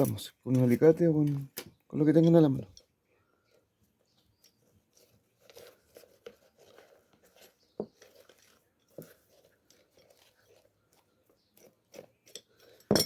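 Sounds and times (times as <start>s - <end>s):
shoe scraping and crinkling: 4.5s - 12.3s.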